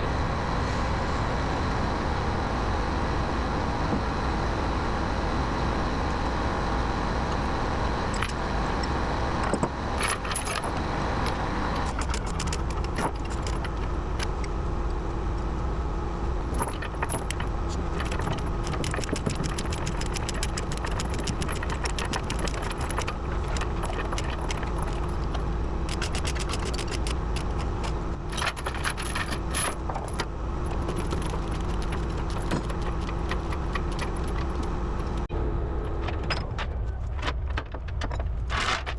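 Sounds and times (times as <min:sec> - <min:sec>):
engine running steadily: 0:00.0 - 0:38.9
metallic clinking and rattling: 0:10.0 - 0:10.8, 0:11.8 - 0:14.3, 0:16.5 - 0:35.3.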